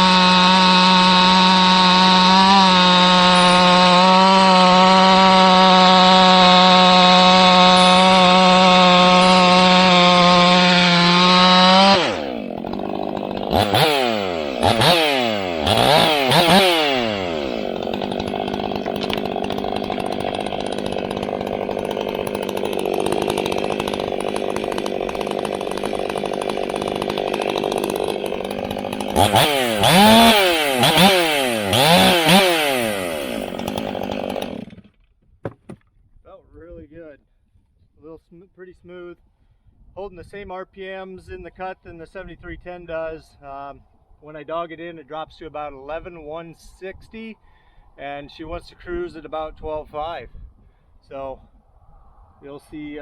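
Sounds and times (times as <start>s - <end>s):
chainsaw revving and idling: 0.0s - 35.8s.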